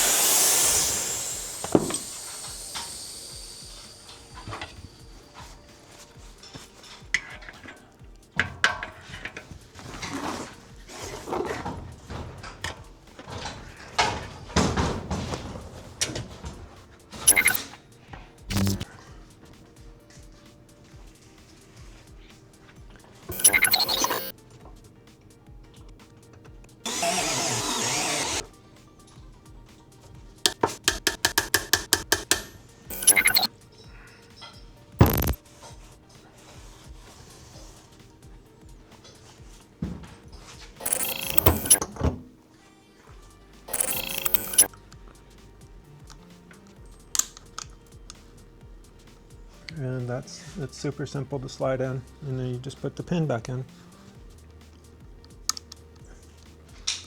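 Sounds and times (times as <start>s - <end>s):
whirring noise: 0.0s - 5.2s, 17.2s - 17.6s, 18.5s - 18.9s, 23.3s - 24.3s, 26.9s - 28.4s, 32.9s - 33.5s, 35.0s - 35.4s, 40.8s - 41.8s, 43.7s - 44.7s
background music: 0.0s - 57.0s
sharp clicks: 17.2s - 17.6s, 18.5s - 18.9s, 23.3s - 24.3s, 30.5s - 33.5s, 35.0s - 35.4s, 40.8s - 41.8s, 43.7s - 44.7s.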